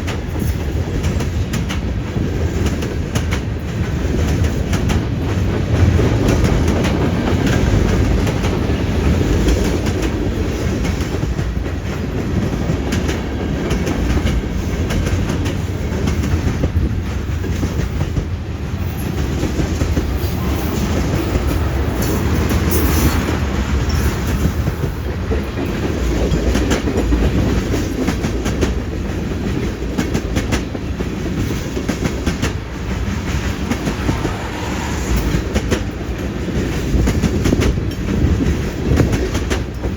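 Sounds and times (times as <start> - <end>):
train wheels rumbling on rail: 0.0 - 39.9
wheels clacking over rail joints: 0.0 - 39.9.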